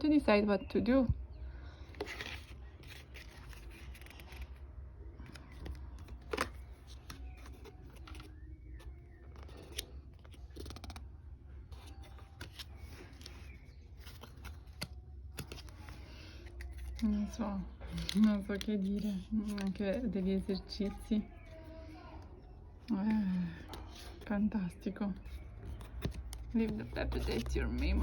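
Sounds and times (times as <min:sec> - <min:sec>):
cardboard pages rustling: 0:01.8 - 0:21.6, 0:22.8 - 0:28.0
cardboard book pages clicking: 0:01.9 - 0:04.6, 0:05.2 - 0:11.1, 0:11.7 - 0:17.2, 0:17.9 - 0:21.1, 0:25.2 - 0:28.0.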